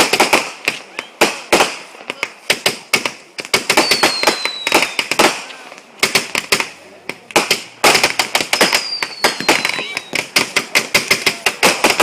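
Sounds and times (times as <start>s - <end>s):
fireworks bangs and crackles: 0.0s - 12.0s
thin firework whistle: 3.8s - 5.1s, 8.6s - 10.3s.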